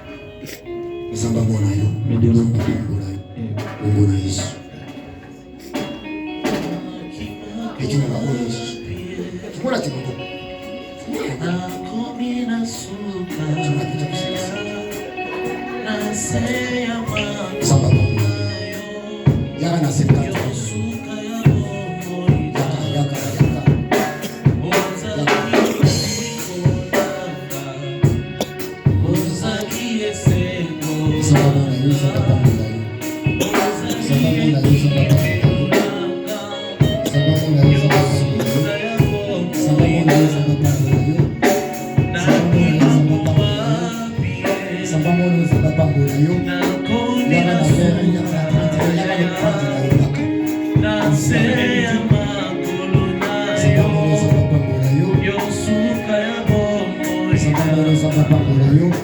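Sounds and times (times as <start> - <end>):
singing voices: 0.0 - 59.0
drum kit beat: 1.5 - 8.0, 8.8 - 12.0, 12.6 - 59.0
bass line: 13.2 - 59.0.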